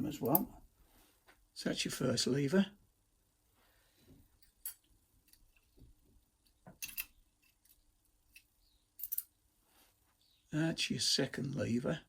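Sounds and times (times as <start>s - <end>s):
metallic lock parts clicking: 0.2s - 0.5s, 6.4s - 9.3s.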